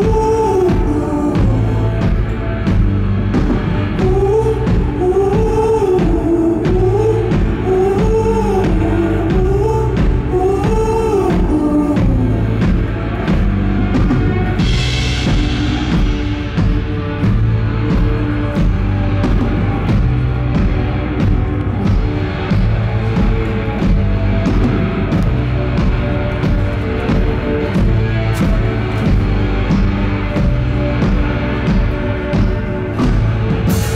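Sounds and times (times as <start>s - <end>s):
wordless sung vocal: 0.0s - 16.2s
live pop-rock band playing: 0.0s - 33.9s.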